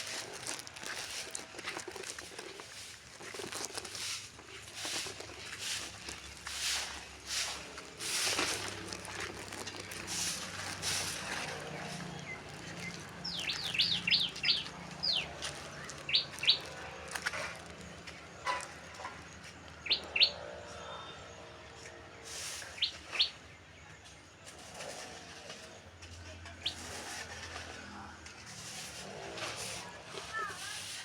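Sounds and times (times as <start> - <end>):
small bird chirping: 11.5 - 18.4, 19.7 - 20.5.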